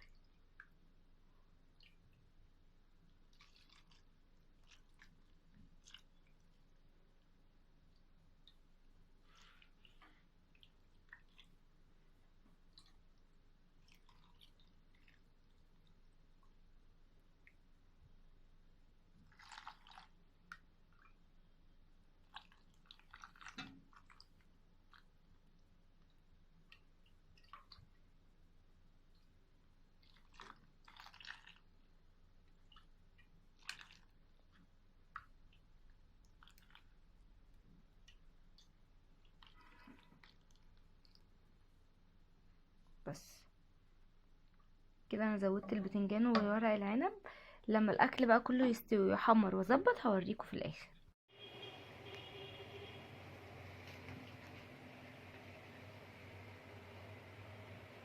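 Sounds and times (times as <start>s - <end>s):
food squishing into a pot: 0.0s - 43.0s.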